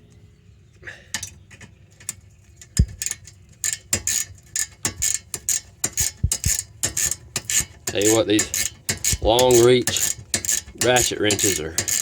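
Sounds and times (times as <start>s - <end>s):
ratchet wrench clicking: 2.8s - 12.0s.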